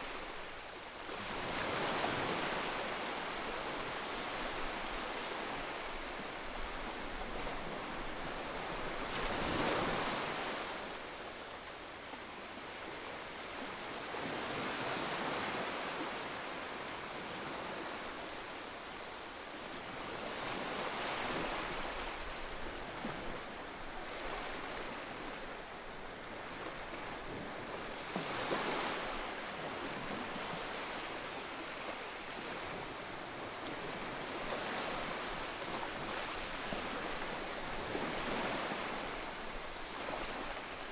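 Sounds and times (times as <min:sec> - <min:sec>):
ocean waves breaking on shore: 0:00.0 - 0:40.9.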